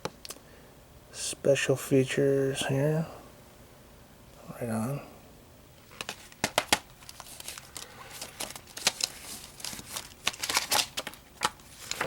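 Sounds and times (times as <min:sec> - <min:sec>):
paper rustling: 0:05.8 - 0:12.0.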